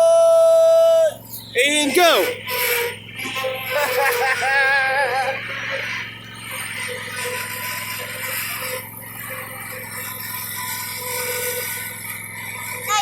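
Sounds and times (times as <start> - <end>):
lawn mower engine running: 0.0 - 13.0.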